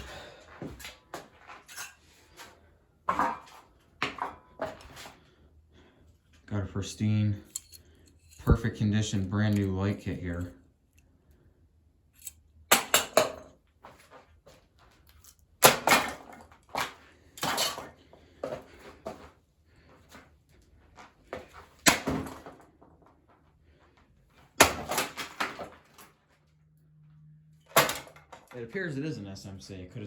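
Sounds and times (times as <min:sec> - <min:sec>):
breaking parts clattering: 0:07.4 - 0:08.6, 0:12.2 - 0:13.5, 0:15.1 - 0:18.0, 0:24.6 - 0:26.1, 0:27.6 - 0:28.6.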